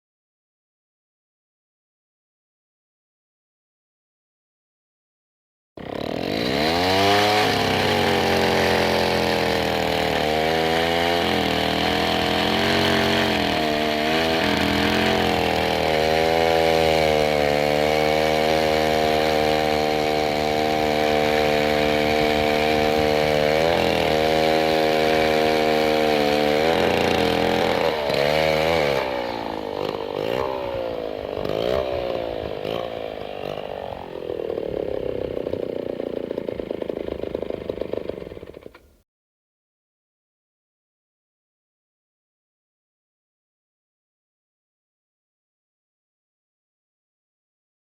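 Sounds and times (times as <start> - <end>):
engine running: 5.8 - 38.9.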